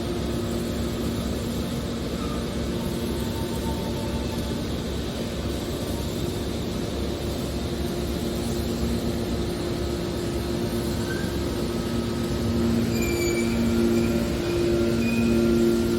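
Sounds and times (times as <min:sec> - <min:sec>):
baler machine hum and whine: 0:00.0 - 0:15.9.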